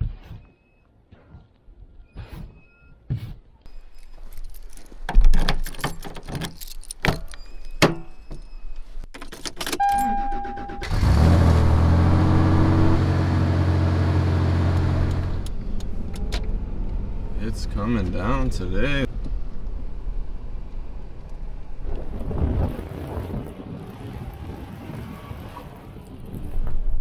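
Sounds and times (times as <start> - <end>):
keys jangling: 3.7 - 7.8, 9.1 - 10.2
truck engine starting and idling: 9.5 - 22.5
brief steady tone: 9.8 - 10.9.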